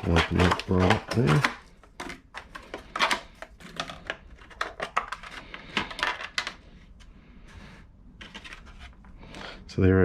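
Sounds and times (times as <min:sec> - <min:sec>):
packaging clicks and crackles: 0:00.0 - 0:06.7.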